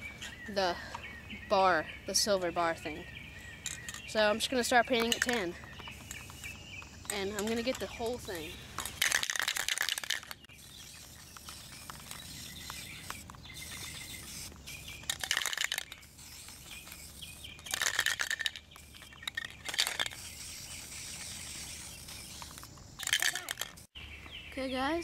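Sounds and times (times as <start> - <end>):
spray paint can hissing: 4.9 - 23.9.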